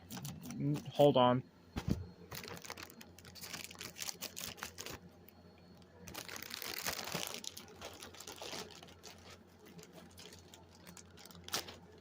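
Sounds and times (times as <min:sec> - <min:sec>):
packaging clicks and crinkling: 0:00.0 - 0:01.0, 0:02.3 - 0:05.1, 0:05.7 - 0:12.0
packaging rustling: 0:02.3 - 0:05.1, 0:06.0 - 0:12.0.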